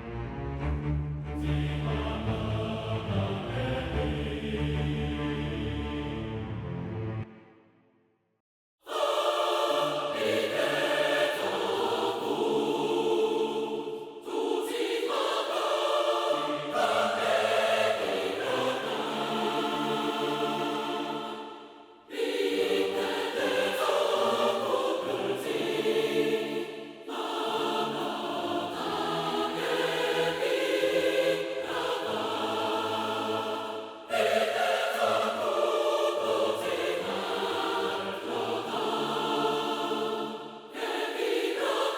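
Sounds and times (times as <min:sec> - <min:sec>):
string section: 0:00.0 - 0:07.4
mixed choir singing: 0:01.4 - 0:06.5, 0:08.8 - 0:41.9.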